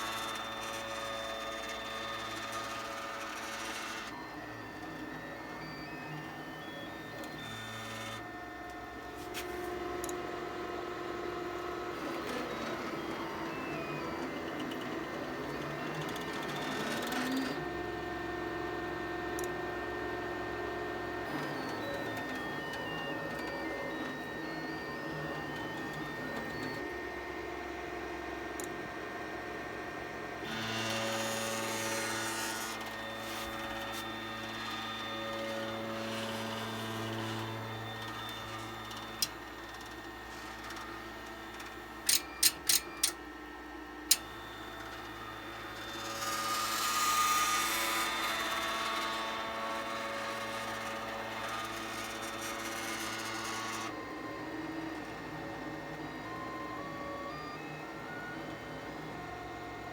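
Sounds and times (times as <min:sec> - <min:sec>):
printer stepper motors humming: 0:00.0 - 0:59.9.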